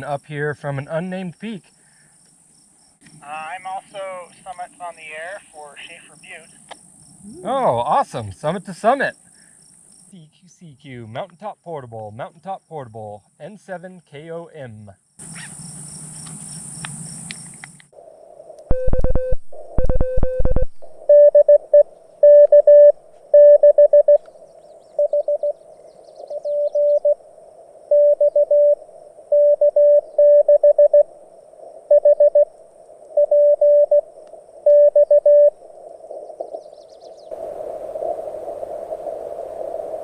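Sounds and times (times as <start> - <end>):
radio receiver hiss: 16.8 - 25.6, 26.3 - 40.0
morse code tone: 18.7 - 24.2, 25.0 - 25.6, 26.3 - 27.2, 27.9 - 31.1, 31.9 - 32.5, 33.2 - 35.6.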